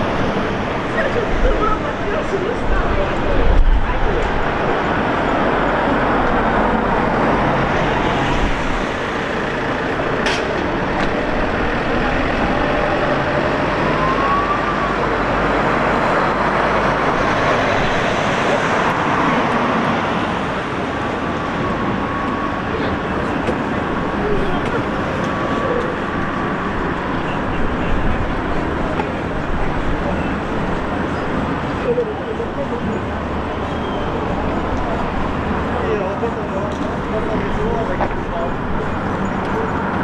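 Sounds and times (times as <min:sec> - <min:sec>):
road traffic noise: 0:00.0 - 0:40.0.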